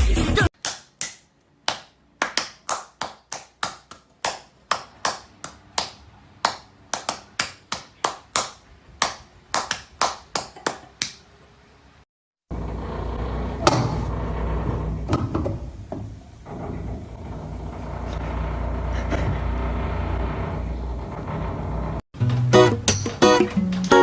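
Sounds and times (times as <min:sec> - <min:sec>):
sharp claps: 0:00.6 - 0:11.2.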